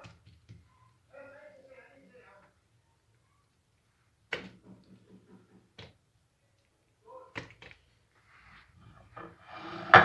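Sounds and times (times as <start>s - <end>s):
kitchen knocks and clicks: 9.0s - 10.0s.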